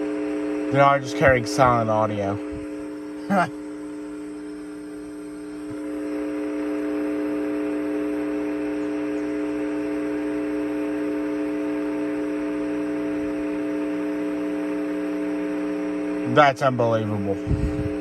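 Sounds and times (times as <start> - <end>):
radio static hiss: 0.0 - 18.0
steady hum of constant tones: 0.0 - 18.0.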